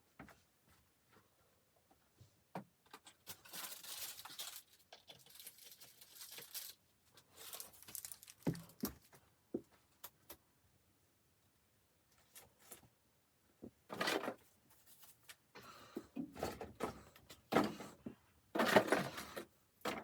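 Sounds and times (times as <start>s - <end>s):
material crinkling and rustling: 3.0s - 9.2s.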